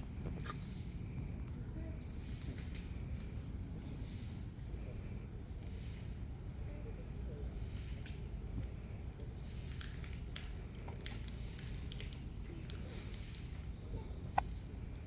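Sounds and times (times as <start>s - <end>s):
insects chirping: 0.0s - 15.0s
faint clicks: 7.7s - 13.7s.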